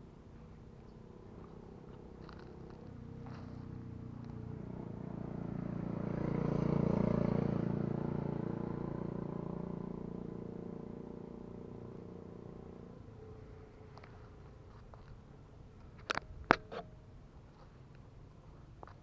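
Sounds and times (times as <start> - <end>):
vehicle engine passing by: 1.2 - 13.9.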